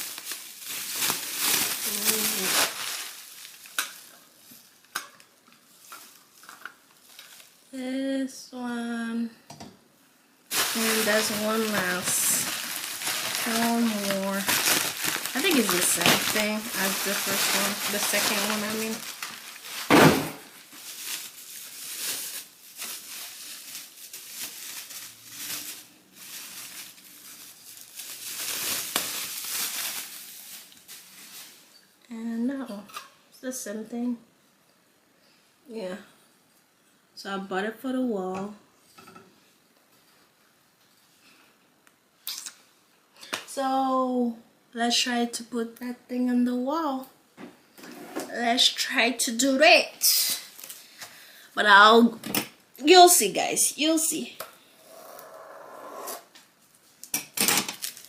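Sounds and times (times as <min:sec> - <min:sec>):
plastic packaging crinkling: 0:00.0 - 0:07.6, 0:10.5 - 0:31.7, 0:56.6 - 0:58.0.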